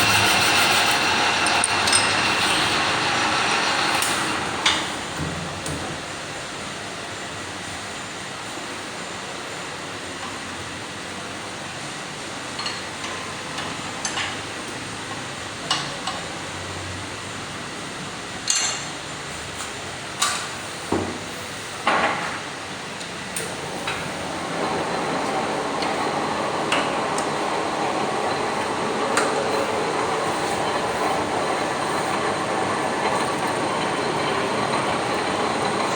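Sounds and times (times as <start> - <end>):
machine grinding: 0.0 - 5.0, 23.6 - 35.9
mechanical hum: 0.0 - 35.9.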